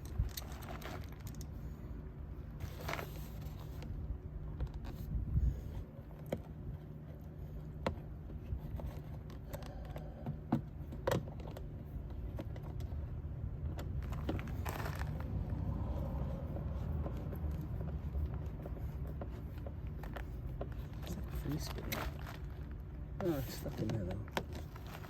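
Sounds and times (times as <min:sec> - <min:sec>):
small parts clicking and tapping: 0:00.0 - 0:01.6
scraping rustle: 0:00.0 - 0:01.8, 0:02.6 - 0:04.0, 0:13.9 - 0:25.0.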